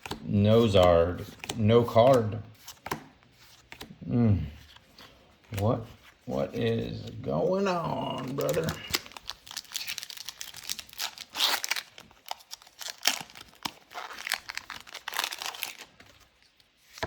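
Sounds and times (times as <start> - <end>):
foil wrapper crinkling and tearing: 7.7 - 16.6.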